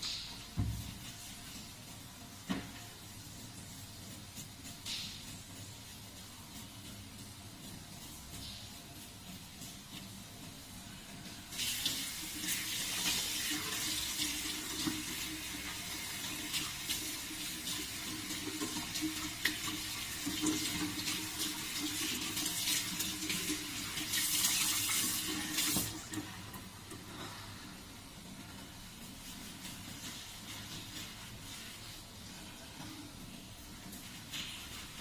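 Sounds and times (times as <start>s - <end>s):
water running from a tap: 11.5s - 26.8s.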